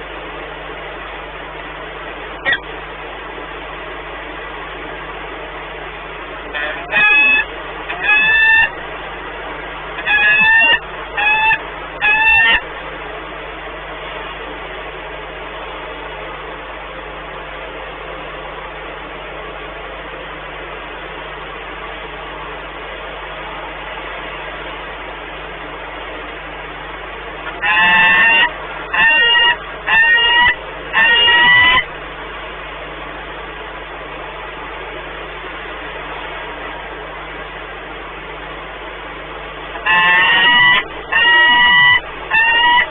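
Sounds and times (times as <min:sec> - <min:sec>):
falcons calling: 0:06.6 - 0:08.8, 0:10.0 - 0:12.6, 0:27.5 - 0:31.9, 0:39.8 - 0:42.9.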